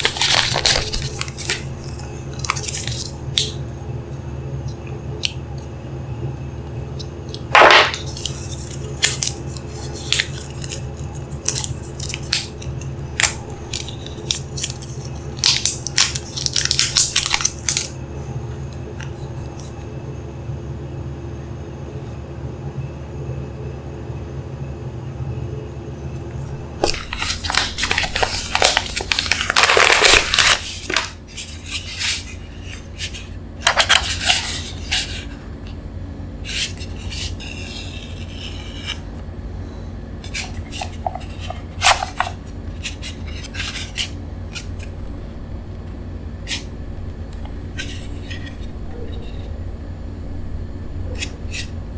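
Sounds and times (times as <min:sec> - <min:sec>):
packaging rustling and crinkling: 0:00.0 - 0:03.5, 0:07.6 - 0:18.0, 0:26.8 - 0:35.2
steady low hum: 0:00.0 - 0:51.9.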